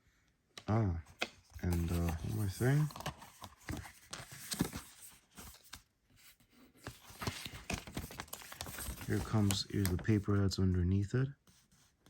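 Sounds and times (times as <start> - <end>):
packaging rustling: 1.5 - 5.8, 6.8 - 10.2.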